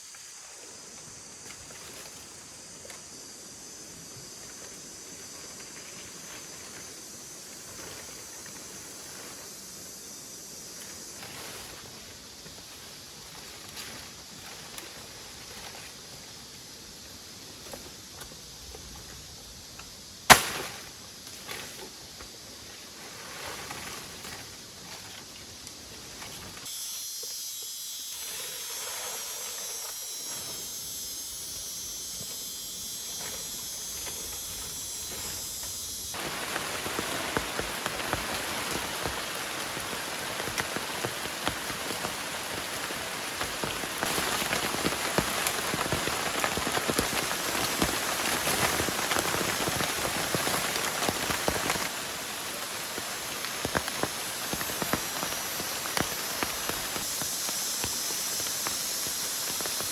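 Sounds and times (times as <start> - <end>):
heavy rain falling: 36.2 - 59.9.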